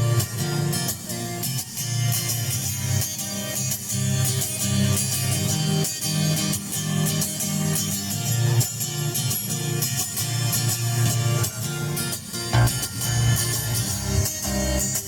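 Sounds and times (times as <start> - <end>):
guitar strummed through a pa: 0.0 - 15.0
sustained low notes: 12.5 - 14.8.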